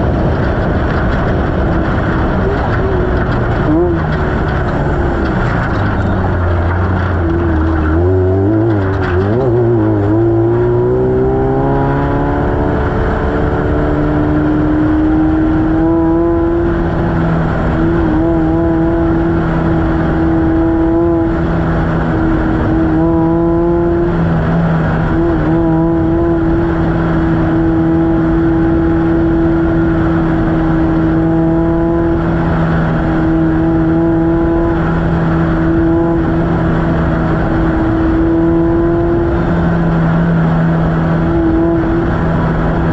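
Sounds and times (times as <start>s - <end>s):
race car engine revving high: 0.0s - 42.9s.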